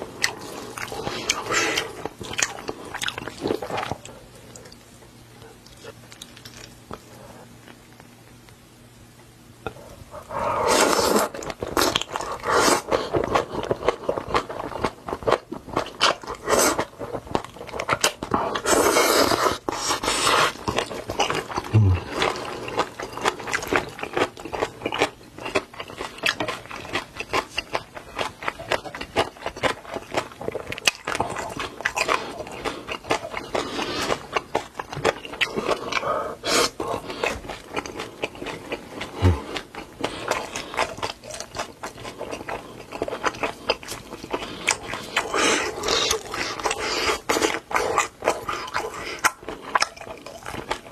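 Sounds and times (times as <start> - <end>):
person chewing crunchy food: 0.0 - 8.6, 9.7 - 50.9.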